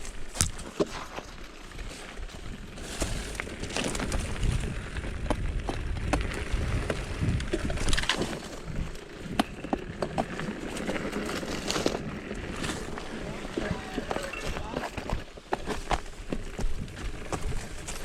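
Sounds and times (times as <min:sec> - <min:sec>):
stones and bike rattling: 0:00.0 - 0:18.0
wind rumbling on microphone: 0:01.4 - 0:18.0.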